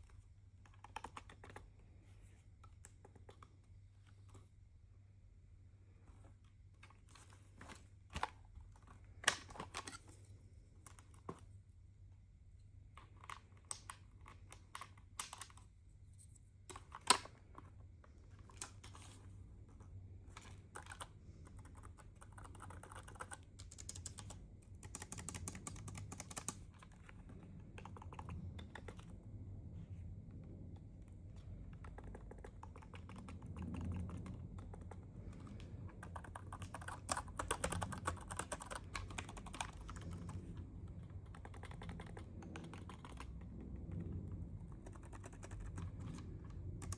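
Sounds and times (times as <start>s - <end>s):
keyboard keys clicking: 20.4s - 29.1s, 31.8s - 40.4s, 41.2s - 44.1s, 44.8s - 46.2s.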